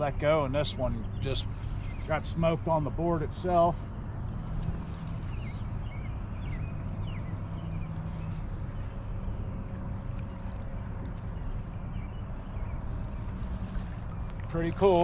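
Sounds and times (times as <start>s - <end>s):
low hum: 0.0s - 15.0s
water against boat hull: 7.2s - 15.0s.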